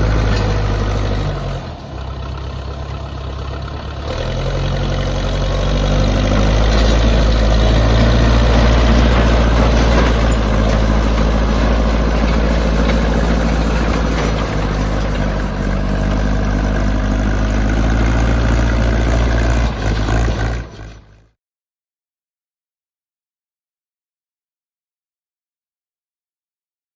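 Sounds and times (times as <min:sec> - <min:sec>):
bulldozer diesel engine running: 0:00.0 - 0:21.4.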